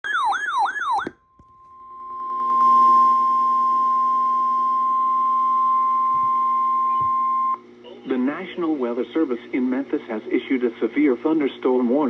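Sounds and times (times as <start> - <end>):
steady warning alarm tone: 0.0 - 7.6.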